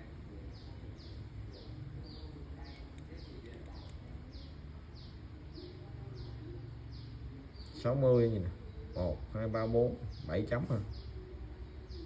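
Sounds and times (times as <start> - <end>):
small bird chirping: 0.0 - 12.0.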